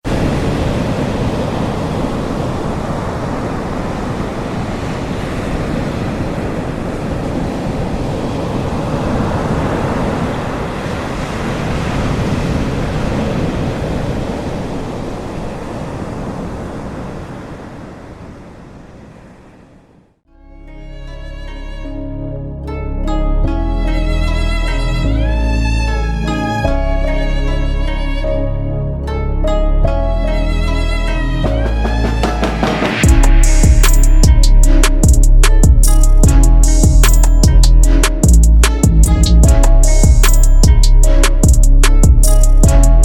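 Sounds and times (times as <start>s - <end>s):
wind buffeting microphone: 0.0s - 20.0s
surf washing onto shore: 0.1s - 19.7s.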